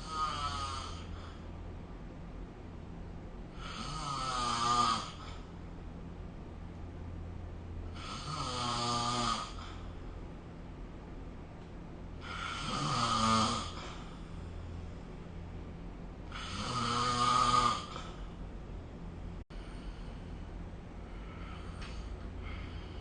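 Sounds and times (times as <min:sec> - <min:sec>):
person snoring: 0:00.0 - 0:01.4, 0:03.5 - 0:05.5, 0:07.9 - 0:09.8, 0:12.2 - 0:14.1, 0:16.3 - 0:18.2.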